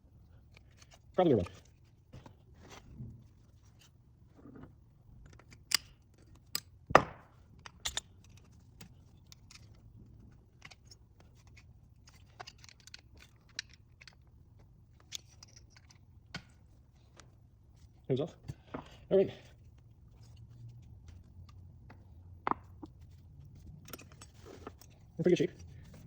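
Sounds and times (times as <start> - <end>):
tools and engine parts clicking: 7.5 - 9.8, 10.5 - 14.4, 15.0 - 16.1, 22.6 - 26.0.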